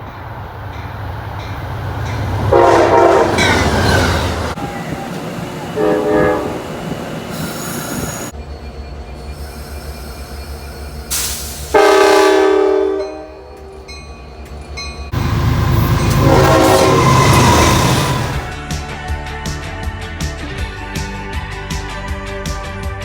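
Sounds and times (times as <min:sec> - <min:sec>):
train rumble: 0:00.0 - 0:19.3
train horn blasts: 0:02.1 - 0:04.8, 0:05.7 - 0:07.8, 0:11.7 - 0:13.9, 0:15.1 - 0:18.6.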